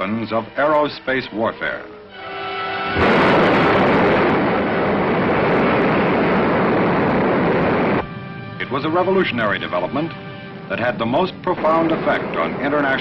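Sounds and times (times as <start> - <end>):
missile engine roar: 2.8 - 13.0.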